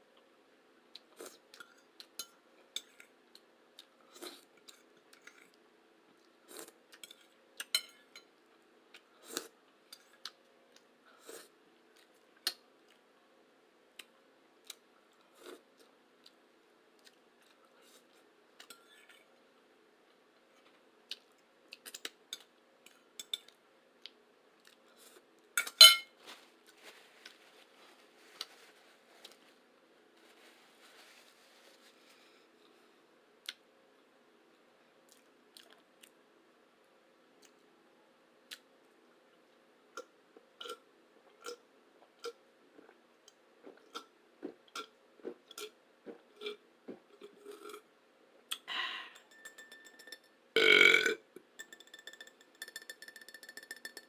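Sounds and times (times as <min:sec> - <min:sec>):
cutlery tapping on a plate: 0:25.6 - 0:26.1, 0:49.3 - 0:50.3, 0:51.6 - 0:54.0.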